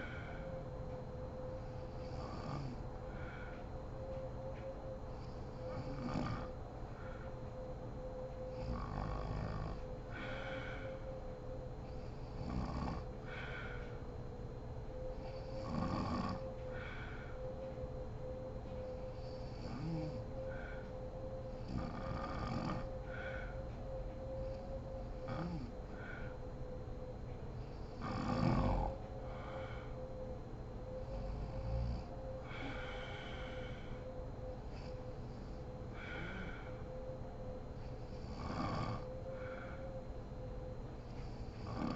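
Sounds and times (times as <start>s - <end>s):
breathing: 0.0s - 7.6s, 8.4s - 14.5s, 15.1s - 17.8s, 18.6s - 26.8s, 27.5s - 37.1s, 37.7s - 40.2s, 40.9s - 41.9s
faint steady hum: 0.0s - 41.9s
woman snoring: 5.7s - 6.5s, 8.5s - 11.0s, 11.9s - 13.8s, 15.3s - 16.4s, 19.2s - 20.8s, 21.6s - 23.5s, 25.3s - 26.2s, 27.8s - 29.8s, 35.9s - 36.8s, 38.1s - 39.8s, 41.4s - 41.9s.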